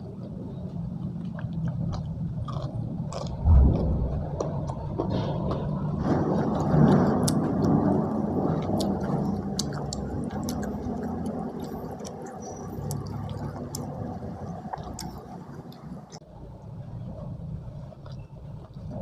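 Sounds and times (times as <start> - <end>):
close-miked chewing: 0.0 - 16.7, 17.6 - 19.0
wet squishy mouth sounds: 8.6 - 16.2.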